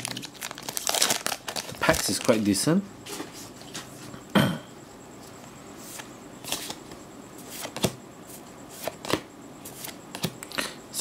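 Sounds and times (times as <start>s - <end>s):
trading cards swishing: 5.8s - 10.3s.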